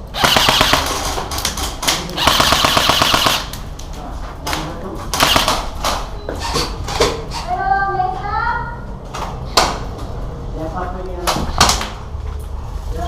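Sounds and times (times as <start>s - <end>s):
airsoft guns firing bursts: 0.0s - 1.4s, 2.2s - 3.6s, 5.2s - 5.8s.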